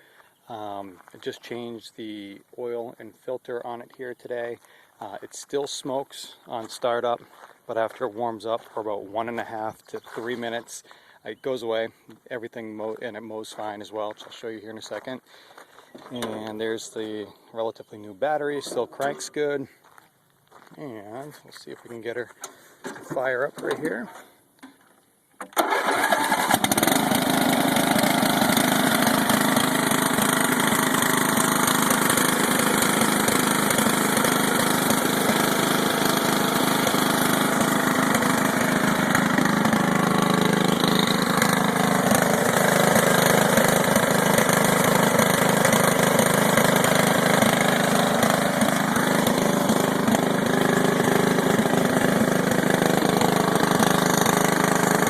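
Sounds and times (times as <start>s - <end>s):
lawn tractor engine running: 25.5s - 55.0s.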